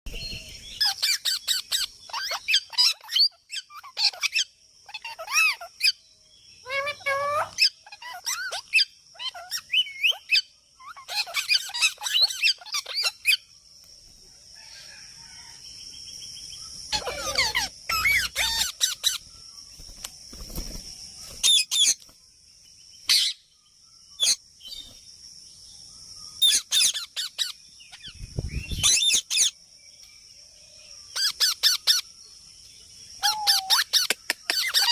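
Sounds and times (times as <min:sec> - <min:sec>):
parrot chirping and squawking: 0:00.8 - 0:06.0, 0:06.6 - 0:13.4, 0:16.9 - 0:19.3, 0:23.1 - 0:23.4, 0:26.4 - 0:28.1, 0:28.8 - 0:29.6, 0:31.2 - 0:32.0, 0:33.2 - 0:34.9.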